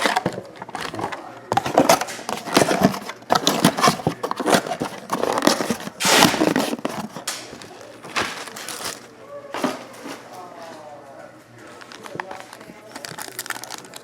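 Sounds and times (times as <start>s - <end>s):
cards scraping and snapping: 0.0s - 9.1s
pack wrapper ripping: 1.7s - 7.5s, 8.1s - 9.1s, 11.9s - 14.0s.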